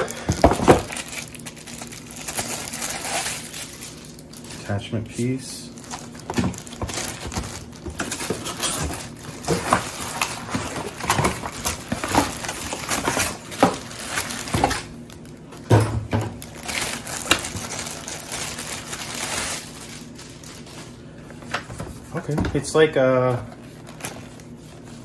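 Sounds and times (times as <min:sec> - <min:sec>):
hard plastic pieces knocking: 0:00.0 - 0:01.5, 0:05.9 - 0:14.9
packaging rustling: 0:00.0 - 0:22.2, 0:23.5 - 0:25.0.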